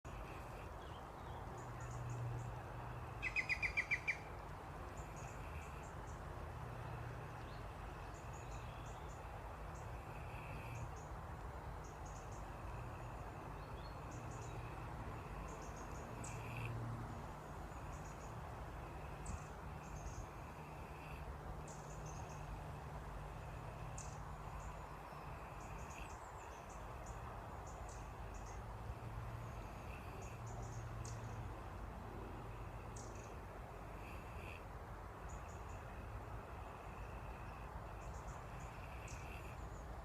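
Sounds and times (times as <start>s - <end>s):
pig snoring: 14.3s - 16.8s, 35.6s - 39.6s.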